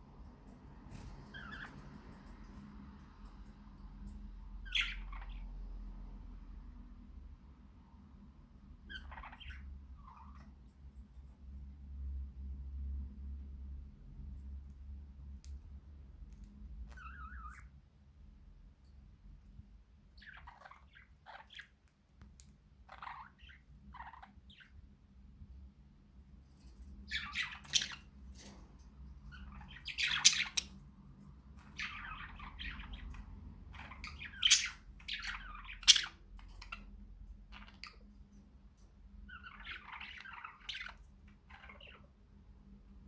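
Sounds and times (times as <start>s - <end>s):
budgerigars chattering and warbling: 4.6s - 5.5s, 8.9s - 10.5s, 27.1s - 28.1s, 29.3s - 30.8s, 31.6s - 36.9s, 39.3s - 42.1s.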